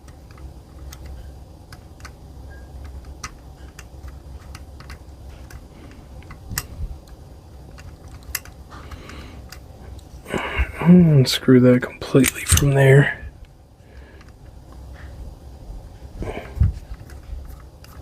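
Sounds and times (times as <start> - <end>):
small metal parts clicking: 0.0 - 10.1
low steady hum: 0.0 - 18.0.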